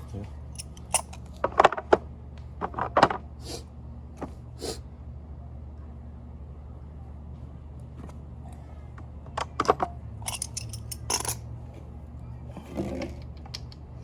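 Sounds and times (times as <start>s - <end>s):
metal hand tools clinking: 0.0s - 1.3s, 10.2s - 11.4s
steady low hum: 0.0s - 14.0s.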